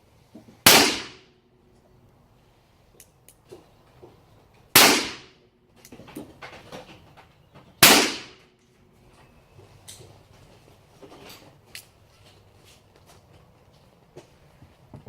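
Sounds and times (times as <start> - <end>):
revolver shots with echo: 0.7 - 1.2, 4.8 - 5.3, 7.8 - 8.4.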